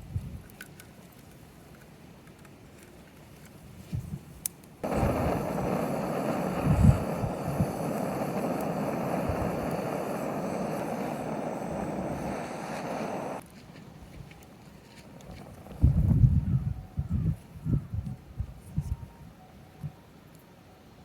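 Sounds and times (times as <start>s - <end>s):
flames rushing: 4.8s - 13.4s, 15.1s - 16.4s.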